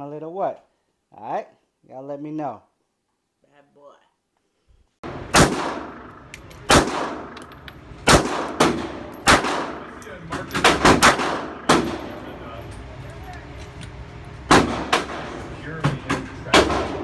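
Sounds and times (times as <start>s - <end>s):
gunshots with ringing echo: 5.0s - 12.4s, 14.5s - 15.5s.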